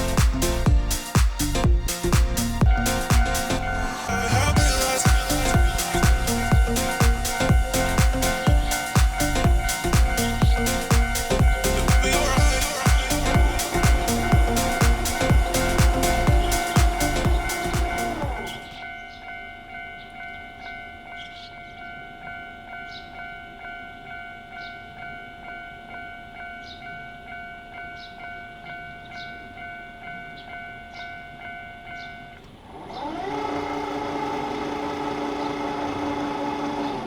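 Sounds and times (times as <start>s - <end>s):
train horn: 2.7s - 18.8s
level-crossing warning bell: 2.7s - 37.0s.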